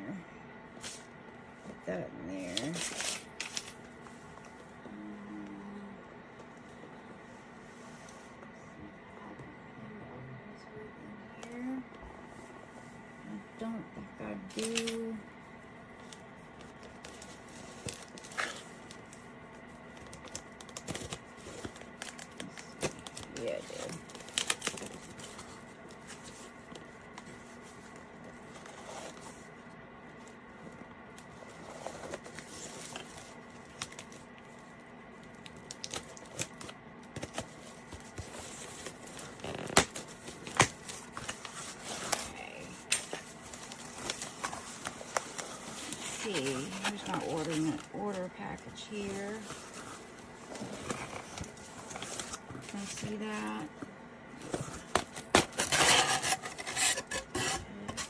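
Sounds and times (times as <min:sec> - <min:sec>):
package rustling and crinkling: 0:02.4 - 0:04.6, 0:15.9 - 0:53.7
tape and packing tearing: 0:02.5 - 0:03.8, 0:20.2 - 0:25.4, 0:35.5 - 0:42.3, 0:54.8 - 0:57.6.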